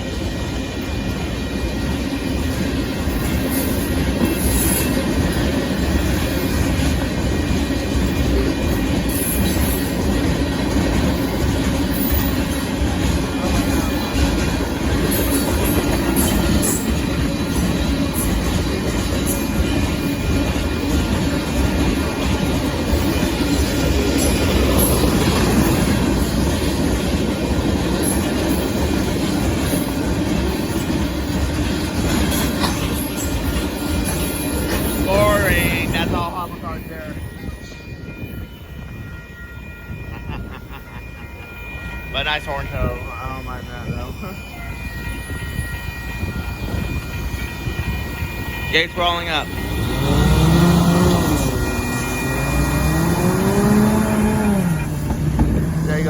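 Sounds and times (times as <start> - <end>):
freight train wheels rumbling on rails: 0.0 - 56.0
high-pitched wheel squeal: 44.4 - 56.0.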